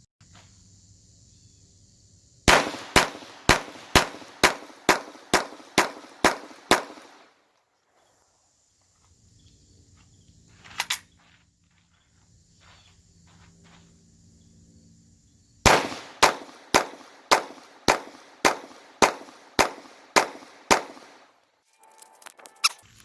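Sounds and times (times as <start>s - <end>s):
pistol shots: 2.5s - 7.4s, 15.6s - 21.4s.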